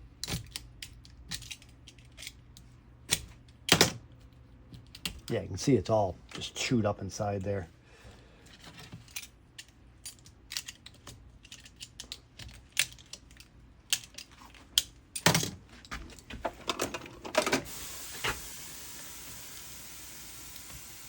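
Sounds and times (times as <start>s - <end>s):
steady hiss: 17.6s - 21.0s.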